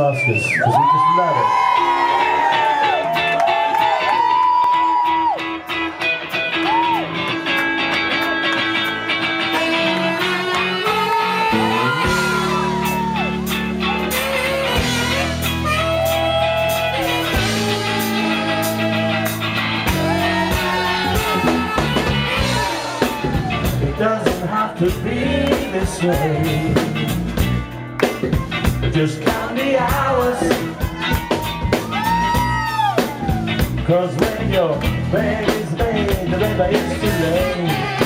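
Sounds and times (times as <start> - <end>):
electric guitar with bent notes: 1.6 - 38.0
heavy bass line: 5.2 - 38.0.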